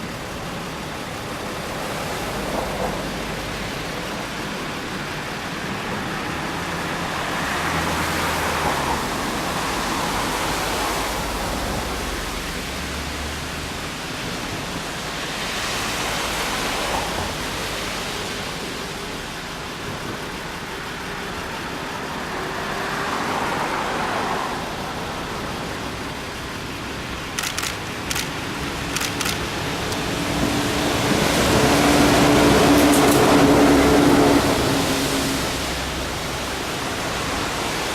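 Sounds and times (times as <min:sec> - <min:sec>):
passing traffic: 0:00.0 - 0:37.9
sharp clicks: 0:27.3 - 0:30.1.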